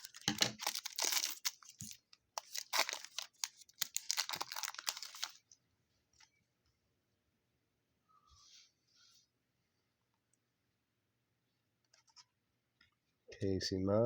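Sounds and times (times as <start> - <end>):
foil wrapper crinkling and tearing: 0.0 - 5.5.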